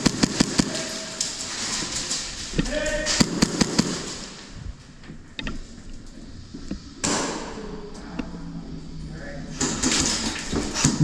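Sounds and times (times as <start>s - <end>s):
airsoft gun shots: 0.0s - 1.1s, 3.1s - 4.4s.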